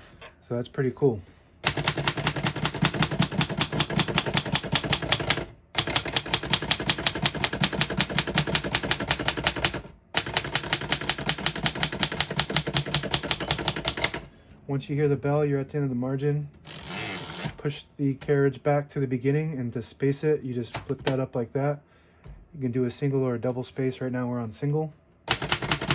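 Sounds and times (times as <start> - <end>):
typewriter keys striking: 1.6 - 14.3, 25.3 - 25.9.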